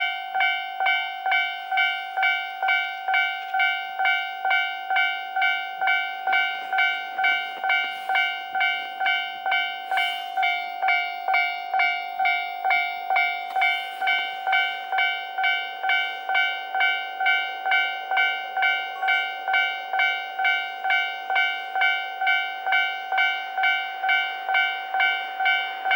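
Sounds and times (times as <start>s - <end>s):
level crossing bell ringing: 0.0s - 25.9s.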